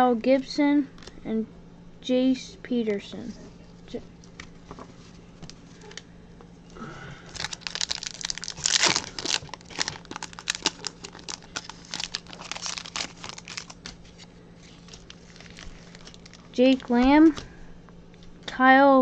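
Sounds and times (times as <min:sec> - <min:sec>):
plastic wrapper tearing and crinkling: 0:07.3 - 0:17.0.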